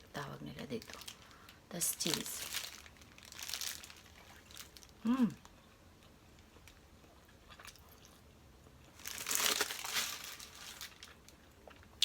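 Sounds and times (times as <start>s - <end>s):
paper wrapper crinkling: 0.8s - 5.0s, 9.0s - 11.4s.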